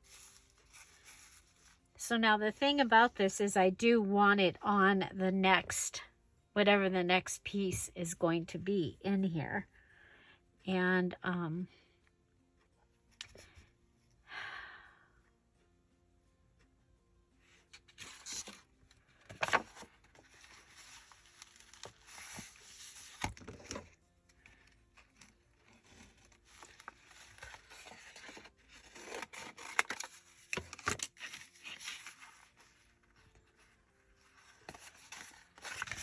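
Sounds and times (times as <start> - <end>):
paper rustling and scraping: 0.0 - 1.9, 17.7 - 36.0.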